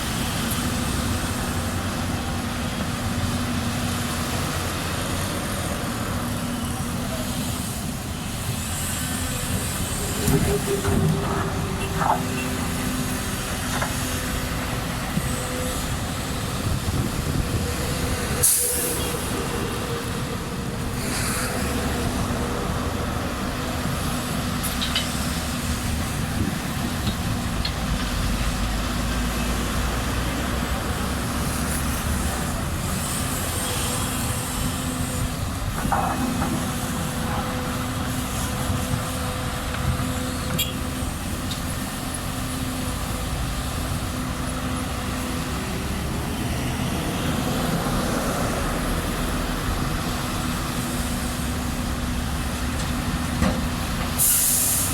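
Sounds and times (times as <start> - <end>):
excavator diesel engine: 0.0 - 54.9
hissing air burst: 18.3 - 19.4, 54.2 - 54.9.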